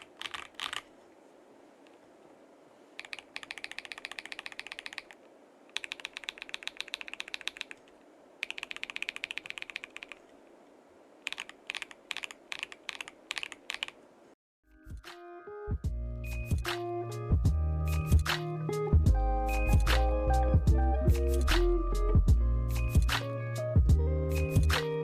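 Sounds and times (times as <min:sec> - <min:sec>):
typing on mechanical keyboard: 0:00.0 - 0:00.9, 0:03.0 - 0:10.3, 0:11.2 - 0:14.0
music: 0:14.6 - 0:25.0.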